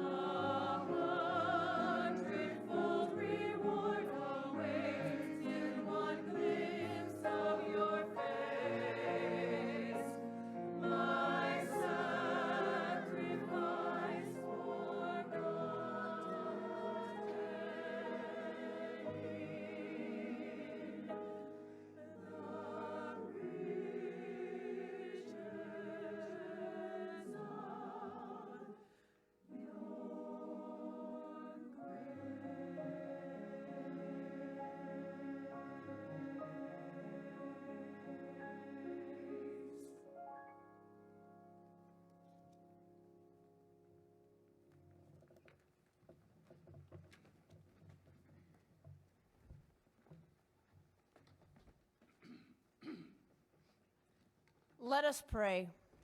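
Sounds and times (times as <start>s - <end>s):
choir singing: 0.0s - 40.1s.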